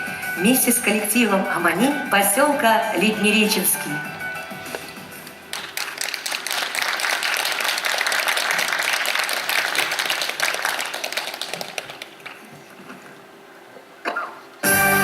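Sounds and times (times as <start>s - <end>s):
audience applauding: 5.5s - 12.7s.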